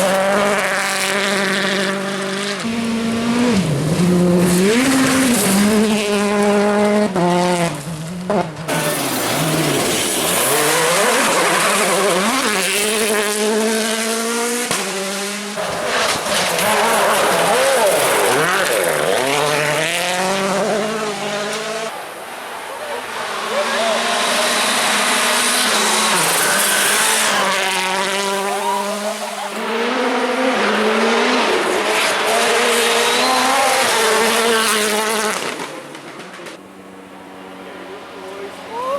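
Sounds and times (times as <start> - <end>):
rally car engine revving: 0.0 - 22.0, 22.8 - 38.9.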